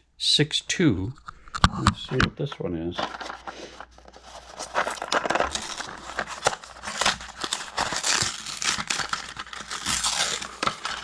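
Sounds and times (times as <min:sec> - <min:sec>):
paper packet crinkling: 0:03.0 - 0:11.0
cardboard box tearing: 0:04.2 - 0:11.0.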